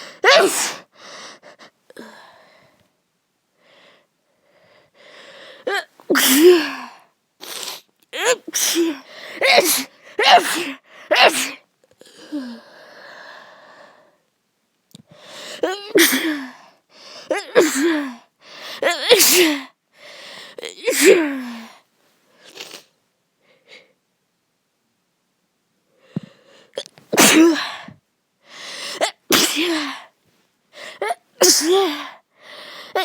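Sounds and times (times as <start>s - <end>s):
person sneezing: 0.0s - 0.9s, 5.7s - 11.6s, 15.6s - 16.6s, 18.8s - 19.7s, 26.8s - 27.9s, 28.8s - 30.1s, 30.8s - 32.1s.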